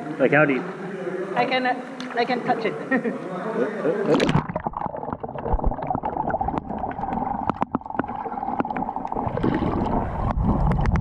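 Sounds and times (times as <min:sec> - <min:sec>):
water sloshing and gurgling: 0:04.0 - 0:11.0.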